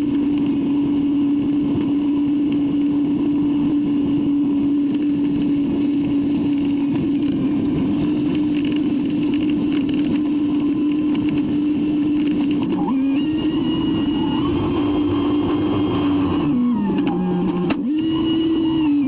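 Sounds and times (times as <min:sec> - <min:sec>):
diesel engine droning: 0:04.1 - 0:19.0.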